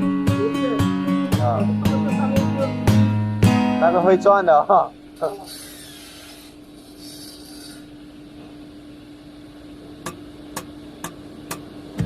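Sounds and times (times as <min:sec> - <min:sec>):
woodworking machine humming: 0:03.8 - 0:08.0.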